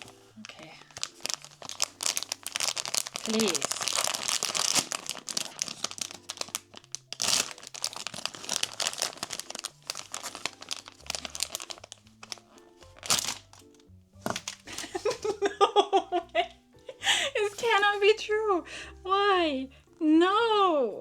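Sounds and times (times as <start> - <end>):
plastic packaging crinkling: 0.0 - 15.5, 17.4 - 18.1
soft background music: 0.0 - 21.0.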